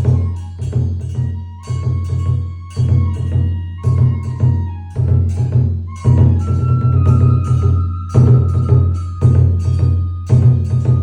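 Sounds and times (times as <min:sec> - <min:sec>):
high flute line: 0:00.0 - 0:11.0.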